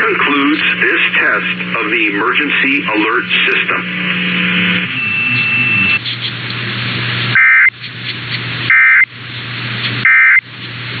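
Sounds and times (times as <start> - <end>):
radio hiss: 0.0 - 7.7
low hum: 0.0 - 11.0
digital data tone bursts: 4.6 - 6.0, 7.4 - 7.7, 8.7 - 9.1, 10.1 - 10.4.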